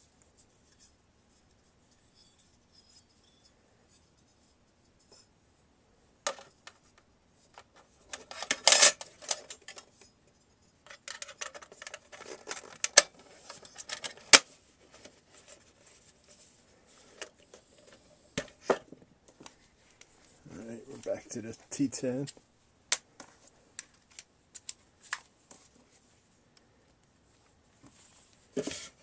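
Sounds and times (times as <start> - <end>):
small metal parts clicking and clinking: 8.1 - 10.1, 10.8 - 14.4.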